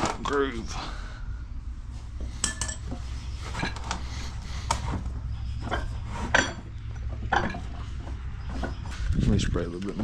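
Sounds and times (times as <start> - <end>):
steady low hum: 0.0 - 10.0
tire spoons clinking on wheel rim: 2.3 - 4.1, 5.1 - 9.0.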